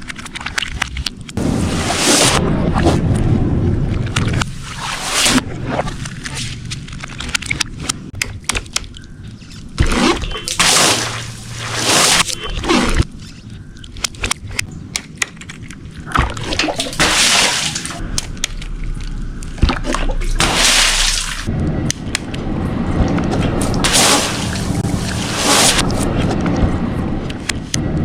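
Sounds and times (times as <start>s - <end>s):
water splashing and sloshing: 0.0s - 27.8s.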